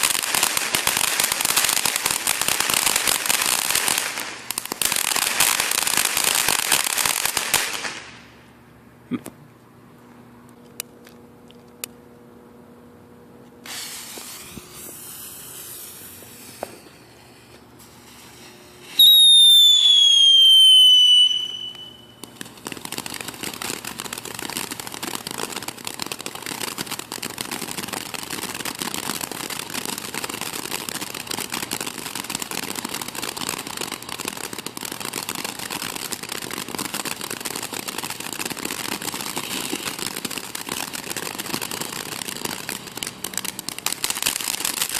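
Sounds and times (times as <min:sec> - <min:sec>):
crackling spray of sparks: 0:00.0 - 0:08.3, 0:13.6 - 0:44.9
fuse hissing: 0:13.6 - 0:19.8
firework whistle: 0:13.6 - 0:22.4.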